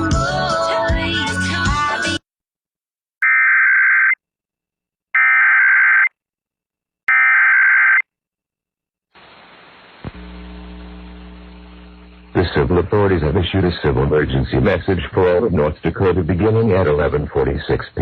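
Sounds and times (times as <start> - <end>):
faint hiss: 9.1 - 12.4
low hum: 10.0 - 12.4.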